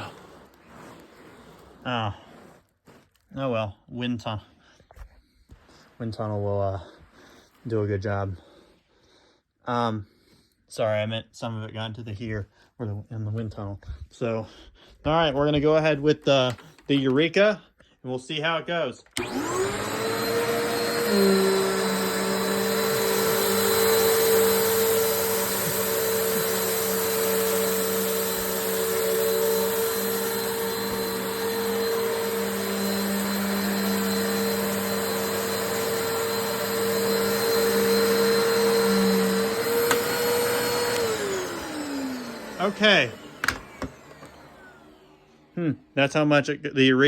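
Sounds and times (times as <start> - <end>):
vacuum cleaner running: 0.0 - 2.6, 19.0 - 46.0.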